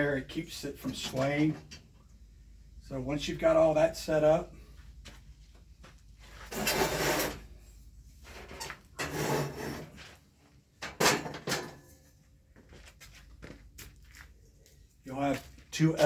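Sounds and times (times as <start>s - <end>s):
metal parts rubbing and scraping: 6.4s - 7.5s, 8.2s - 10.0s.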